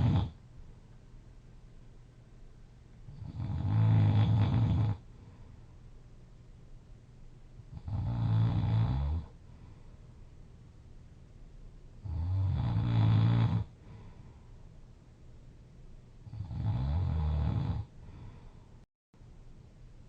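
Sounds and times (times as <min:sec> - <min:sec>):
person snoring loudly: 0:00.0 - 0:00.4, 0:03.1 - 0:05.0, 0:07.8 - 0:09.3, 0:12.0 - 0:13.7, 0:16.3 - 0:17.9
quiet breathing: 0:03.0 - 0:06.1, 0:09.1 - 0:10.6, 0:13.6 - 0:15.1, 0:17.7 - 0:18.9.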